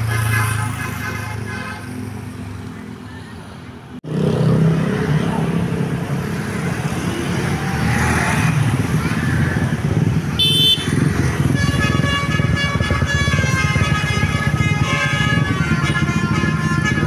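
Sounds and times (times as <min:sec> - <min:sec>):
multi-tone bus horn melody: 0:00.0 - 0:02.1, 0:10.4 - 0:17.0
bus engine running: 0:08.5 - 0:17.0
short horn toot: 0:10.4 - 0:11.0.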